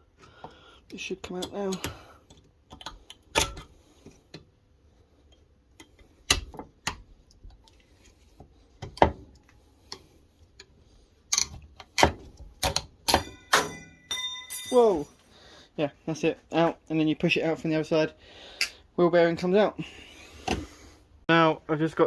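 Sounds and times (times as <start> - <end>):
pliers clicking and scraping on metal: 0.9 - 3.7, 8.9 - 14.8.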